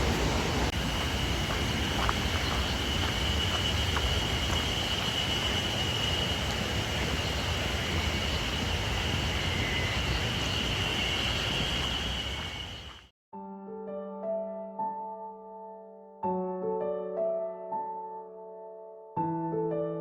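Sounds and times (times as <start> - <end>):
waterfall rushing: 0.0 - 12.7
high-pitched whine: 0.0 - 13.1.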